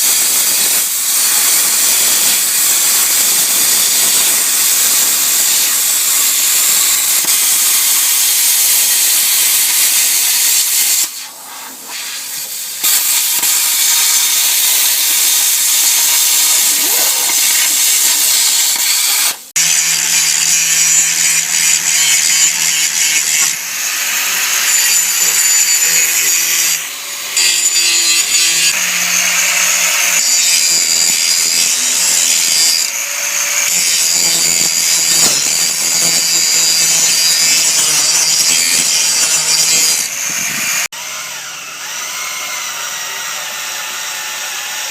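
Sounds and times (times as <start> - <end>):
power tool grinding steel: 0.0 - 44.9.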